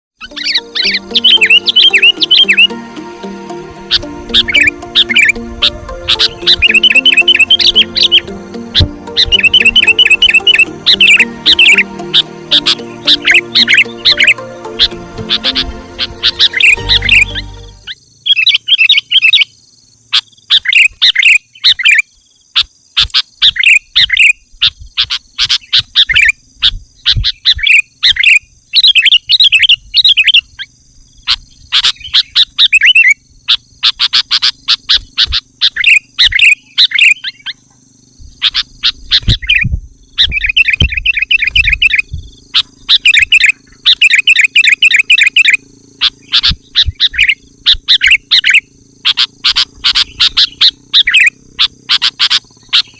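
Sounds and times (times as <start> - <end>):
bird singing quick chirping notes: 0.2 - 19.4, 38.2 - 52.9.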